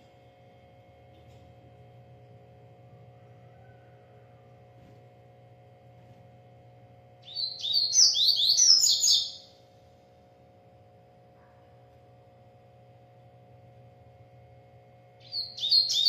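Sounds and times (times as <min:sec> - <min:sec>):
faint steady hum: 0:00.0 - 0:16.0
bird chirping song: 0:07.2 - 0:09.6, 0:15.2 - 0:16.0.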